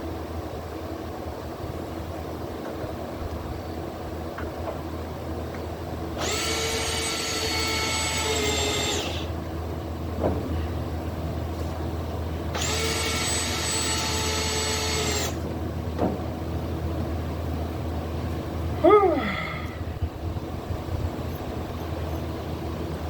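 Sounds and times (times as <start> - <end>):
power tool motor whining: 6.2 - 9.4, 12.5 - 15.4.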